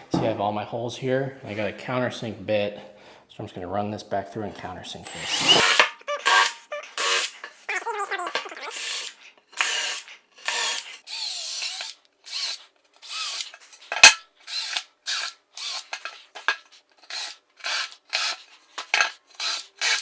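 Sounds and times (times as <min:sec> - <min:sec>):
drill countersinking wood: 0:05.1 - 0:20.0.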